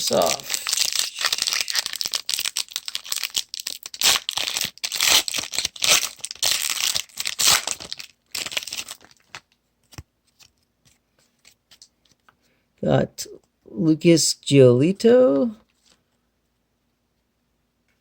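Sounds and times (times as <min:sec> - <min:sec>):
wrapper tearing and crinkling: 0:00.0 - 0:10.5.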